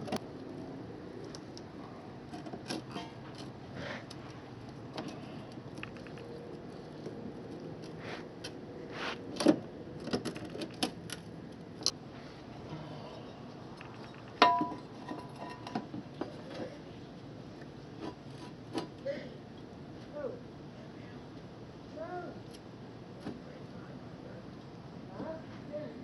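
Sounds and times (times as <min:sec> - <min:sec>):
metal tools clinking and knocking: 0:13.8 - 0:15.9
loud metal clang: 0:14.4 - 0:14.9.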